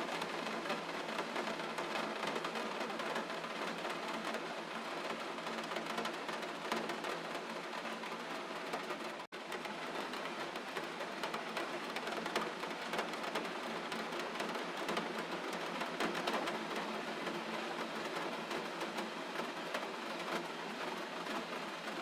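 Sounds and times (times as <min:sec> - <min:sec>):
gentle rain: 0:00.0 - 0:22.0.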